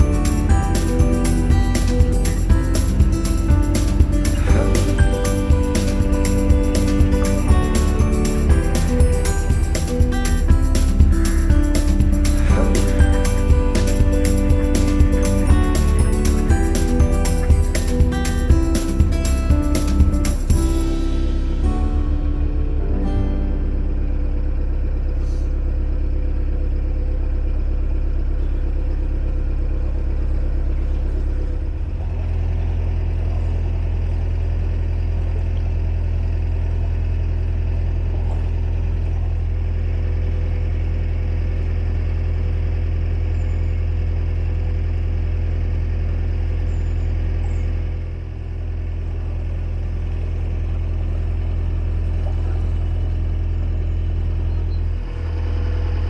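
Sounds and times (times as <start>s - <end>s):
boat engine running: 0.0s - 42.4s.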